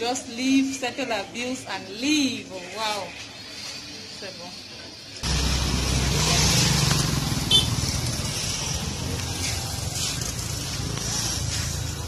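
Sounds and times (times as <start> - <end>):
street traffic: 0.0 - 12.0
vehicle engine running: 5.2 - 12.0.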